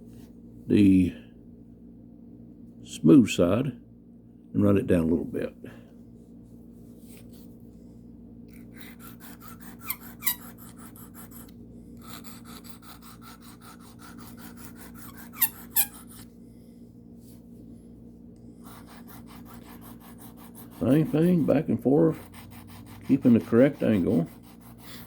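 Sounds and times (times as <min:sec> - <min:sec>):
steady low hum: 0:00.0 - 0:25.0
sharp squeaks: 0:15.1 - 0:16.2.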